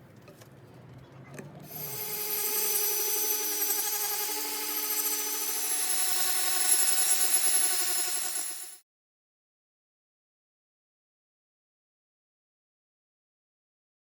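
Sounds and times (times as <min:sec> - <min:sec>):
power tool whining: 0:01.7 - 0:08.8.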